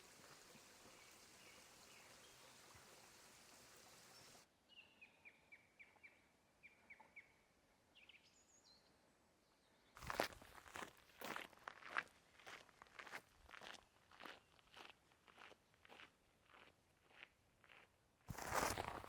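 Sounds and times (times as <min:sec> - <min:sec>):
faint steady hiss: 0:00.0 - 0:04.4
small bird singing: 0:00.6 - 0:10.0
crunching footsteps: 0:10.0 - 0:19.0.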